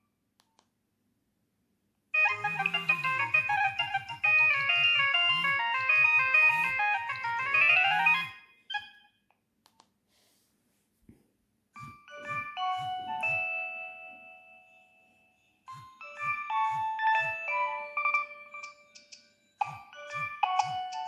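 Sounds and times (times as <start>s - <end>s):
bell-like ringtone notes: 2.2s - 9.1s, 11.8s - 21.0s
polyphonic ringtone melody: 2.2s - 9.1s, 11.8s - 21.0s.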